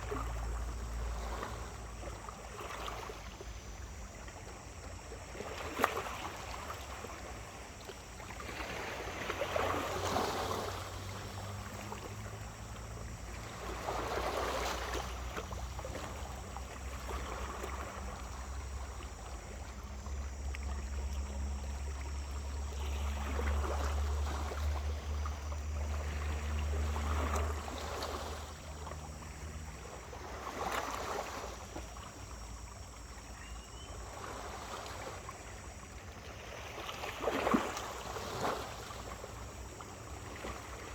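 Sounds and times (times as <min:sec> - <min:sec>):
small waves washing onto beach: 0:00.0 - 0:32.5
low steady hum: 0:00.0 - 0:40.9.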